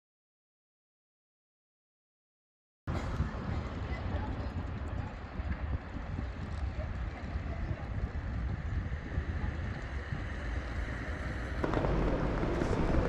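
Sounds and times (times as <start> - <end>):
wind buffeting microphone: 2.9 - 13.0.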